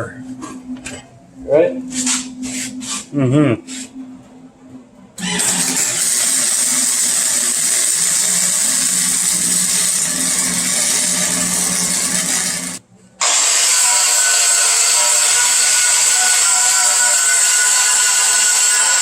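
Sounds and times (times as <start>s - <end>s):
low electrical hum: 0.0s - 13.2s
welder crackling sizzle: 5.2s - 12.8s.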